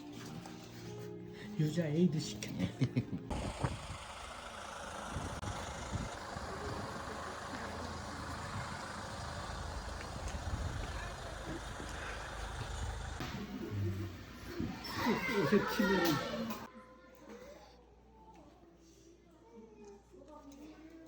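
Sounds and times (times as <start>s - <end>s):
vehicle noise: 2.2s - 16.7s.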